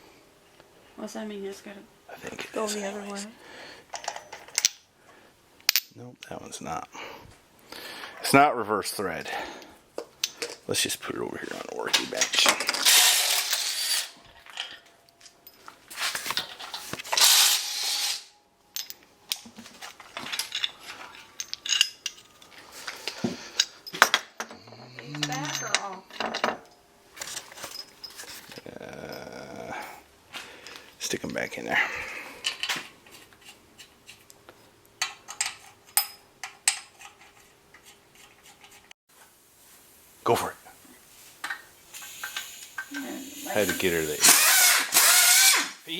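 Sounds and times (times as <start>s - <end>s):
clinks of metal bolts and tools: 3.9s - 4.9s, 10.2s - 10.7s, 11.9s - 15.7s, 18.7s - 28.5s, 35.0s - 38.0s.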